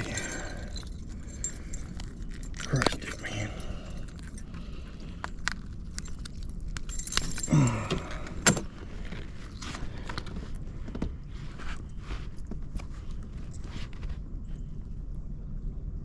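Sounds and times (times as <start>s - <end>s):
metallic clinking of fishing lure: 0.0s - 8.6s.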